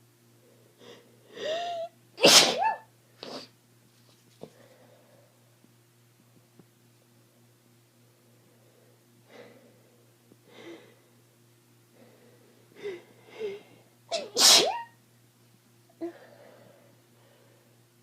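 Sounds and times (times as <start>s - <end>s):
person breathing: 0.4s - 1.9s, 4.4s - 5.4s, 8.4s - 11.2s, 11.9s - 14.0s, 16.0s - 17.8s
loud sneeze: 2.2s - 3.5s, 14.1s - 15.0s.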